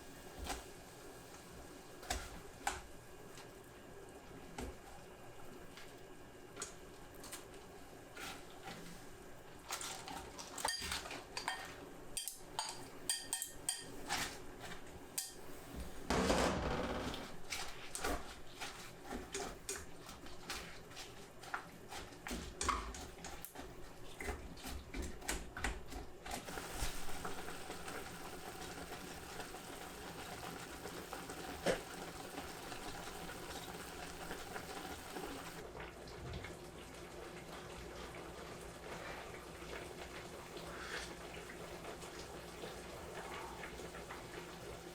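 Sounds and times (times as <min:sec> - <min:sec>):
dishes and pots clinking: 0:10.6 - 0:14.2, 0:15.2 - 0:15.5.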